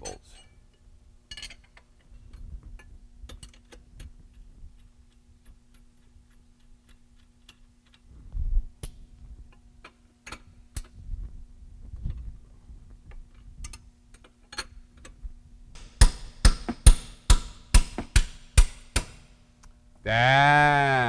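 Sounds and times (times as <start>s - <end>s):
heavy thump: 15.8s - 19.2s
ratchet wrench clicking: 15.8s - 19.2s
sharp metal knocks: 15.8s - 19.4s.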